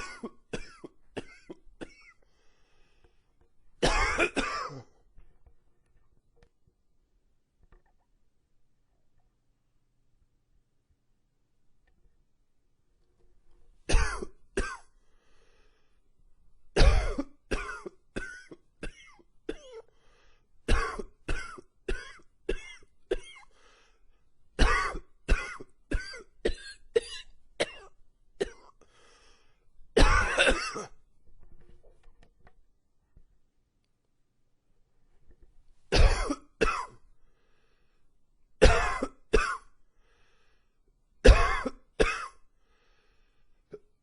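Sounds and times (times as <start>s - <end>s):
man coughing: 0.0s - 2.2s, 3.8s - 5.0s, 13.9s - 14.8s, 16.8s - 19.8s, 24.6s - 28.7s, 30.0s - 31.0s, 35.9s - 37.0s, 38.6s - 39.7s, 41.3s - 42.4s.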